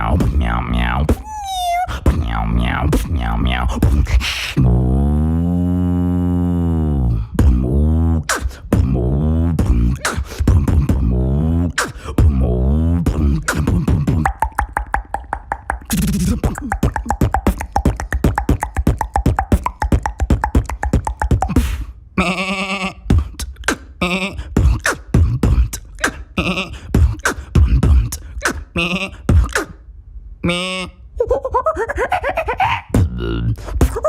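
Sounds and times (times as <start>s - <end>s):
throaty vocal animal imitation: 0.0s - 29.8s, 30.4s - 34.0s
mouth clicks and pops: 13.0s - 21.9s, 23.1s - 24.0s, 24.6s - 29.8s.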